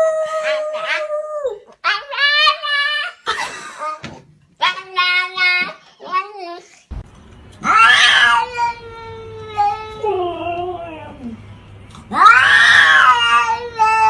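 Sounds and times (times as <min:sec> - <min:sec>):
cat yowling: 0:07.6 - 0:10.5, 0:12.1 - 0:14.0.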